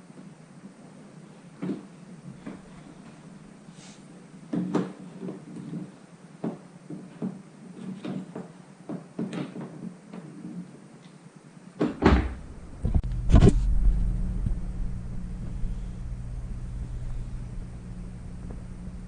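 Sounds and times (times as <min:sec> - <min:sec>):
loud thumps: 0:11.8 - 0:16.1
steady low rumble: 0:12.3 - 0:19.0.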